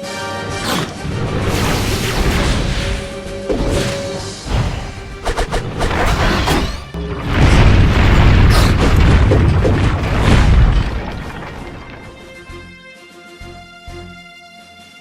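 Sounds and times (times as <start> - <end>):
music: 0.0 - 9.8, 11.1 - 15.0
sharp hits: 0.6 - 10.6
rumbling boom effect: 0.6 - 12.4.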